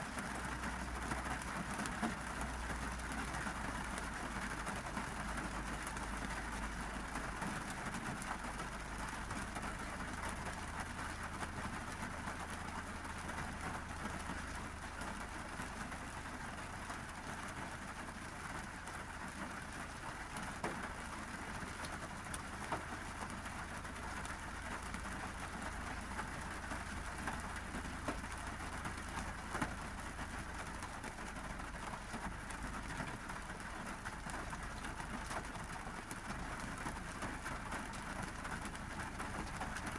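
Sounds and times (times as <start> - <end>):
rain on car roof: 0.0 - 39.9.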